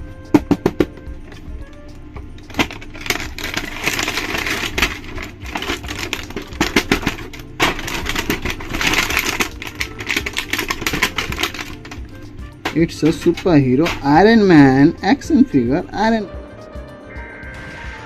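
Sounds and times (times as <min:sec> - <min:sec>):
plastic packaging rustling: 0:02.4 - 0:14.8.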